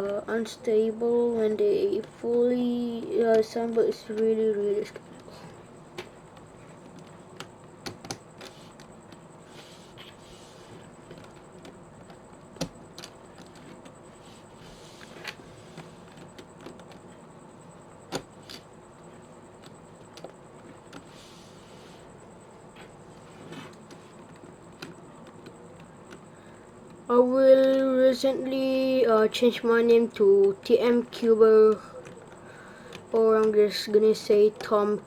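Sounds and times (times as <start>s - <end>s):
plastic puzzle pieces clicking: 4.1s - 9.2s, 10.0s - 14.0s, 14.8s - 17.2s, 18.1s - 18.7s, 23.4s - 26.2s.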